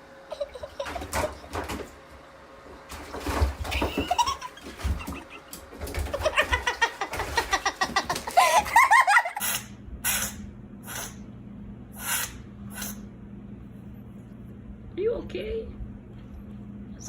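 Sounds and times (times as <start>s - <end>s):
low room hum: 0.0s - 17.0s
people laughing: 0.3s - 1.4s, 3.7s - 9.4s.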